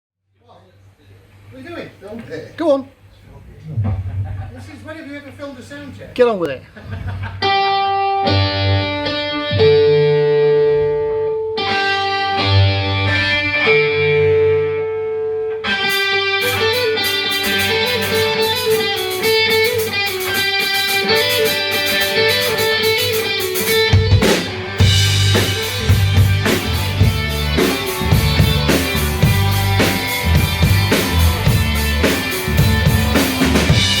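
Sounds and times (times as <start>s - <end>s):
electric guitar chords and melody: 7.3s - 34.0s
drum kit: 9.6s - 14.5s, 15.6s - 34.0s.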